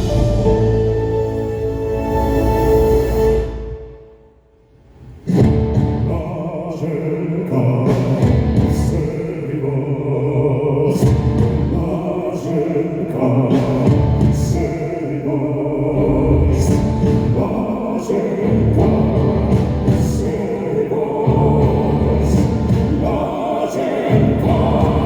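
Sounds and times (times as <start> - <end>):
heavy bass pulses: 0.0 - 2.1, 15.6 - 17.9, 21.3 - 23.4, 24.1 - 25.0
men singing in harmony: 6.1 - 25.0
live rock band music: 18.5 - 20.3.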